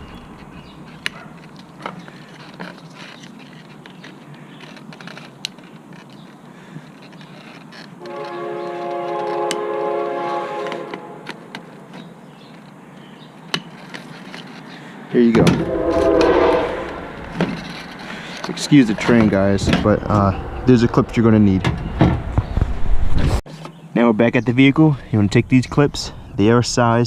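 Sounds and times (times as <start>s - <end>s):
train horn chord: 8.0s - 11.3s, 15.4s - 17.4s
passing train rumble: 15.2s - 23.1s.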